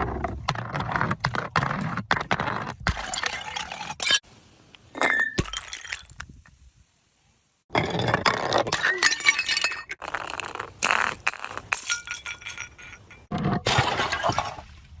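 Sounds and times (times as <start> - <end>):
glass bottles shattering: 5.0 - 6.2, 7.8 - 10.0, 11.3 - 14.6.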